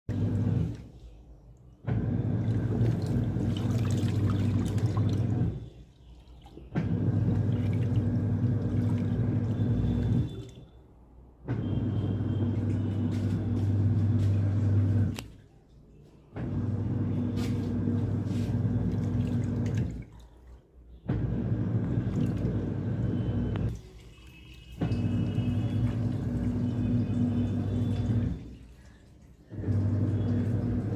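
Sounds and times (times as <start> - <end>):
washing machine motor hum: 0.1 - 10.8, 11.4 - 15.5, 16.3 - 30.9
water sloshing in drum: 1.8 - 10.7, 16.3 - 30.9.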